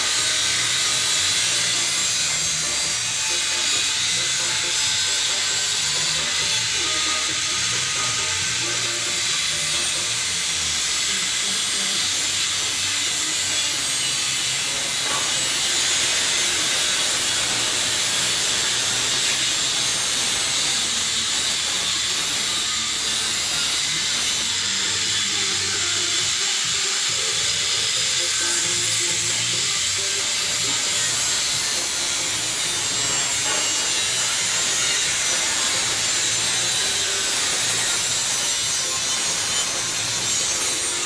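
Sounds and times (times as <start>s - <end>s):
steady hiss: 10.7s - 24.5s, 29.9s - 41.0s.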